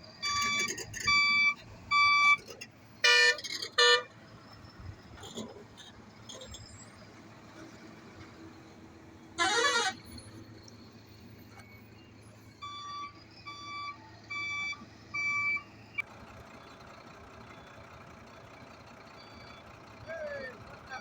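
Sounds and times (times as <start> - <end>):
heavy machinery engines humming: 0.0 - 21.0
reversing alarm beeps: 0.2 - 2.4, 10.1 - 16.0, 19.1 - 19.7
warbling horn toot: 9.4 - 10.2.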